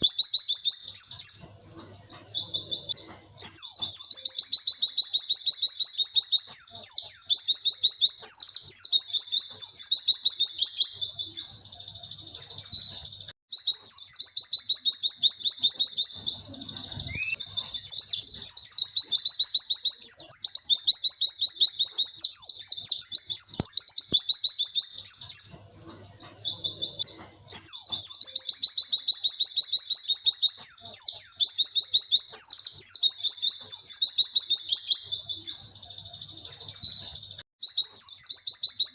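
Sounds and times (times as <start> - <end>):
bird singing high chirps: 0.0 - 38.9.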